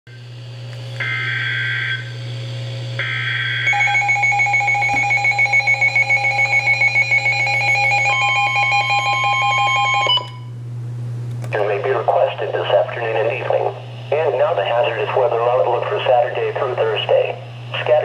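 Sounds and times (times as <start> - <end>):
shrill steady alert tone: 3.0 - 10.5.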